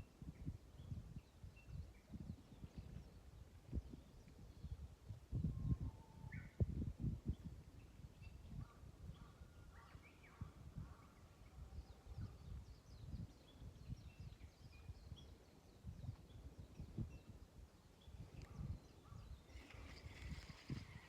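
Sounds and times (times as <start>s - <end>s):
birds chirping: 8.2s - 21.0s.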